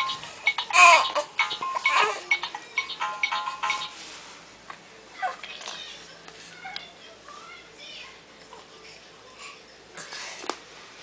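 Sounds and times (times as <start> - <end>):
electronic toy jingle beeps: 0.0 - 4.0
baby cooing: 0.7 - 2.4.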